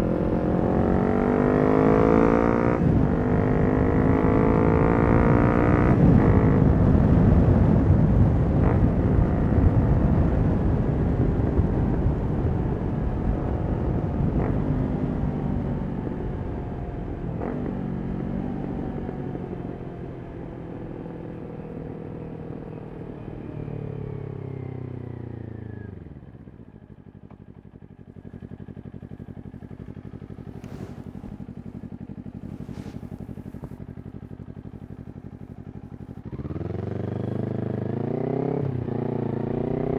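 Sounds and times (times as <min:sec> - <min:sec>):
motorcycle engine decelerating: 0:00.0 - 0:39.9
motorcycle engine idling: 0:26.2 - 0:37.7.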